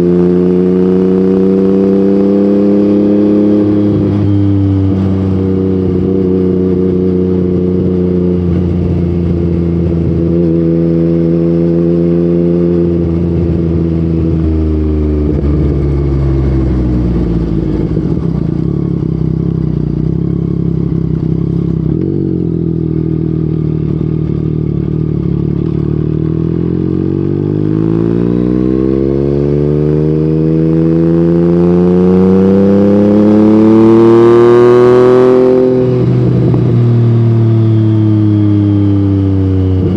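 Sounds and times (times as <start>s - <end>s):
motorcycle engine: 0.0s - 39.9s.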